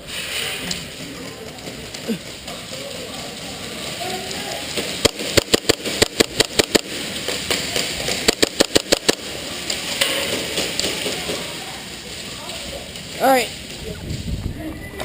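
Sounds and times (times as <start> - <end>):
airsoft gun shots: 5.0 - 6.9, 8.2 - 9.3.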